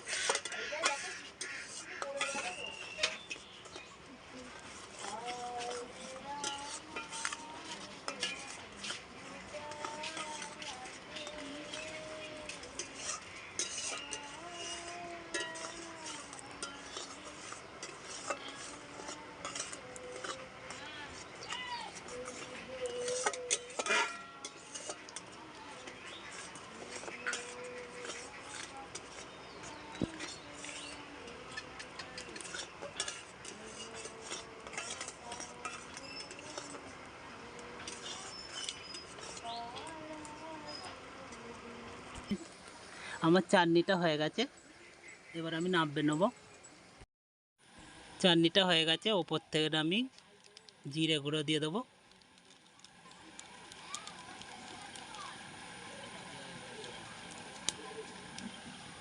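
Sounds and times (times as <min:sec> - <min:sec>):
spoon stirring thick sauce: 0:00.1 - 0:41.4.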